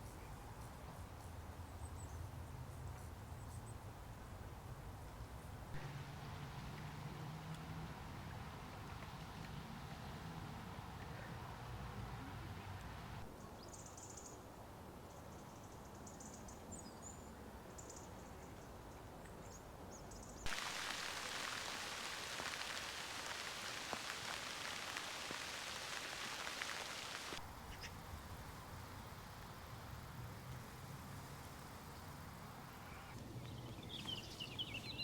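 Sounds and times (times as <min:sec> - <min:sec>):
steady rain falling: 0:05.8 - 0:13.3, 0:20.5 - 0:35.0
faint high bird chirps: 0:32.7 - 0:35.0.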